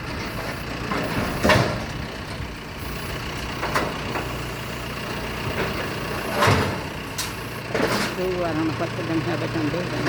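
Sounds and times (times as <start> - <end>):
diesel engine running: 0.0 - 10.0.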